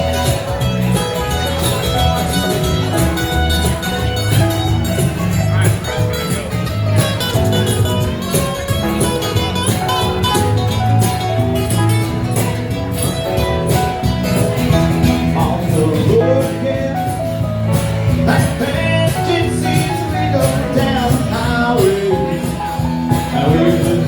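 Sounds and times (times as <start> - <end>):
upbeat music with plucked guitar: 0.0 - 24.0
person singing: 15.1 - 17.4, 18.1 - 24.0.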